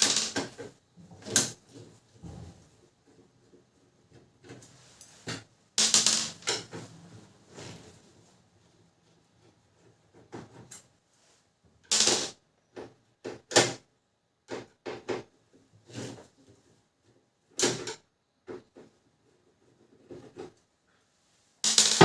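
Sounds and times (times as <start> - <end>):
plastic parts clicking and knocking: 0.0 - 6.9, 11.8 - 15.5, 17.5 - 20.7, 21.6 - 22.0.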